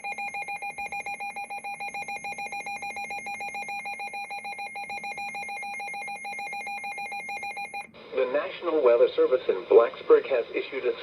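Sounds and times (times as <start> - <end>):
alarm beeping rapidly: 0.0 - 7.9.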